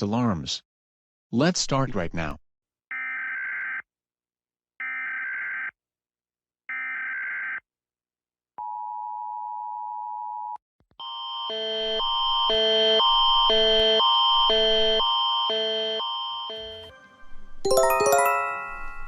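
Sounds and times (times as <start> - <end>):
alternating stepped tone alarm: 11.0 - 16.9.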